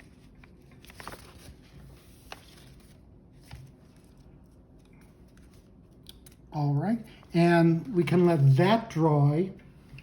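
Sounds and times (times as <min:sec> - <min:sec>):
paper model handling: 0:00.0 - 0:06.4.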